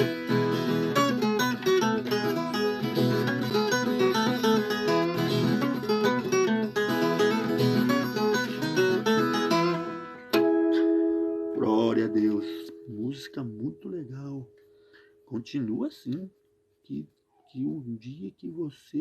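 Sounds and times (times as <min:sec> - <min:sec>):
plucked viola caipira: 0:00.0 - 0:14.6.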